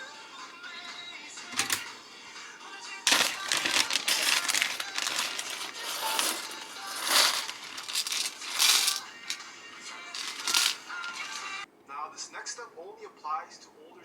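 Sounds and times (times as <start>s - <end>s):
keyboard parts clicking and rattling: 1.5s - 1.9s, 3.1s - 9.1s, 10.2s - 11.5s.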